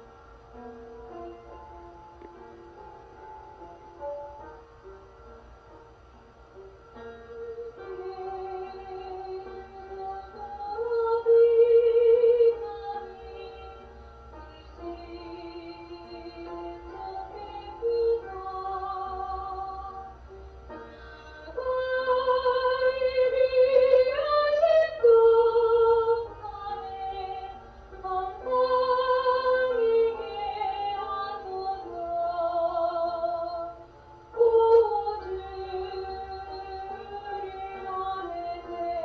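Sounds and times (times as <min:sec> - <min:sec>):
soft musical accompaniment: 0:00.0 - 0:39.0
woman singing gospel: 0:34.4 - 0:39.0.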